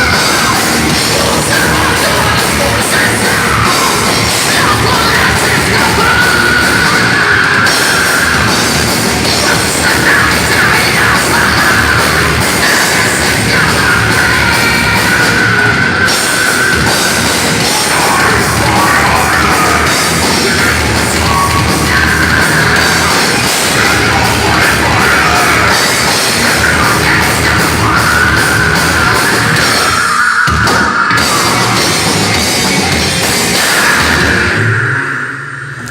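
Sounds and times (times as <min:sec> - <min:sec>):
thrash metal band playing loudly: 0:00.0 - 0:35.9.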